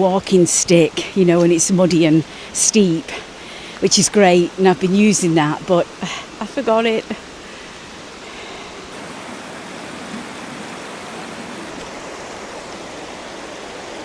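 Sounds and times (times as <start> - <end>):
river flowing: 7.3 - 14.0.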